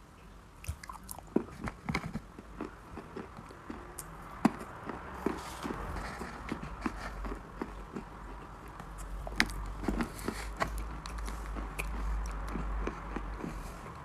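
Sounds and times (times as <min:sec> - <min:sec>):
low steady hum: 0:00.0 - 0:14.0
chalk crunching when chewed: 0:00.6 - 0:14.0.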